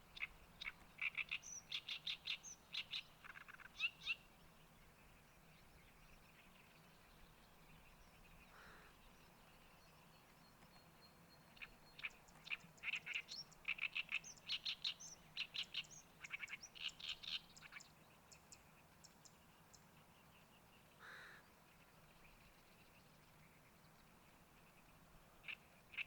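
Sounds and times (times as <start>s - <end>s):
songbird chattering song: 0.0s - 26.0s.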